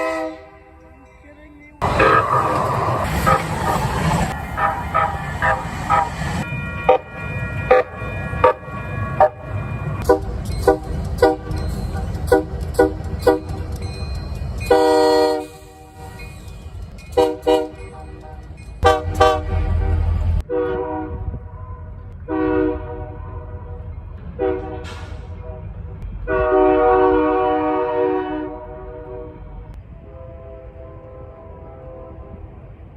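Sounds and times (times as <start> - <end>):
train air horn blasts: 0.0 - 0.8, 6.8 - 13.6, 14.7 - 16.2, 17.2 - 21.6, 22.2 - 32.6
moving train rumble: 0.0 - 32.9.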